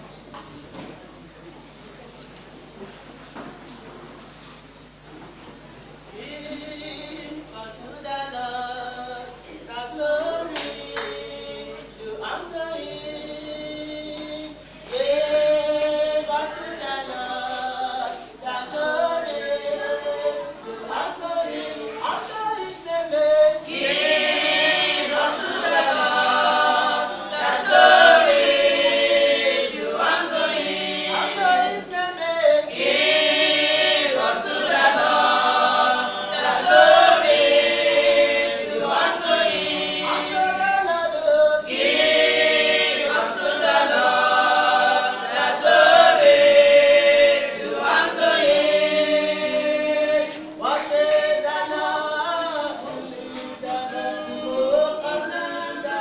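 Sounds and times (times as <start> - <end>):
church choir singing: 23.6 - 56.0.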